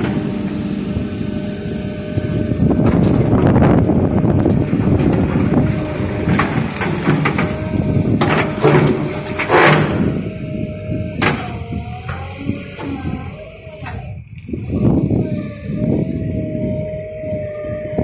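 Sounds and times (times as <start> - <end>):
backhoe engine running: 0.0 - 18.0
metallic clanks and knocks: 4.4 - 10.2, 11.2 - 13.0.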